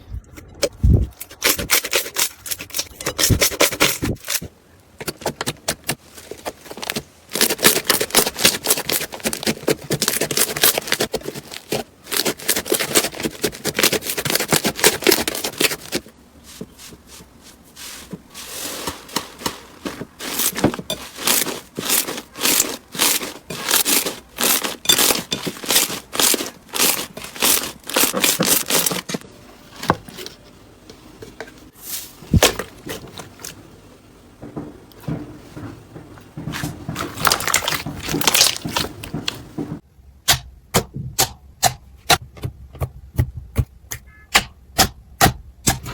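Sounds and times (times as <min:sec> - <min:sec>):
slime crackling and popping: 0:19.0 - 0:29.2.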